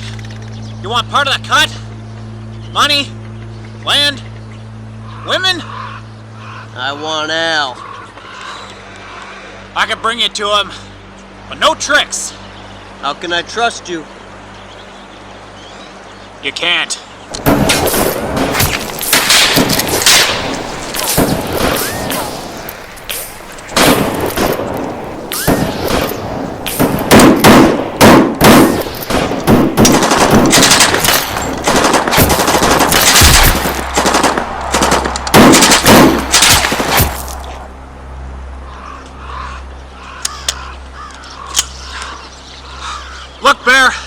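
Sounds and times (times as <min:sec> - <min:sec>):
low steady rumble: 0:00.0 - 0:16.4
submachine gun bursts: 0:29.8 - 0:36.9.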